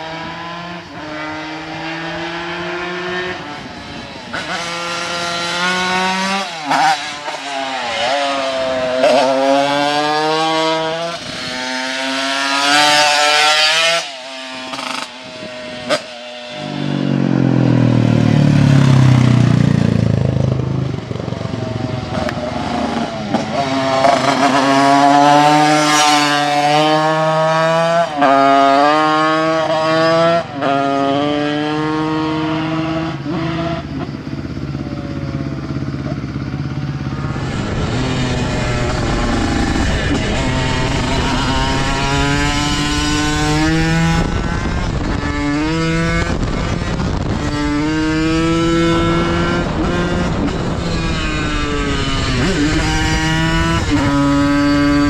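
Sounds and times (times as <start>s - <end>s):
moped engine revving: 31.1s - 55.0s.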